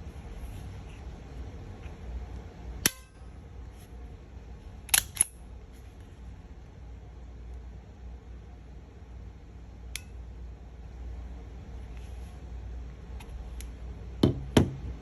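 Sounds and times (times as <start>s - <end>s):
pistol metallic clicks: 4.9s - 5.4s.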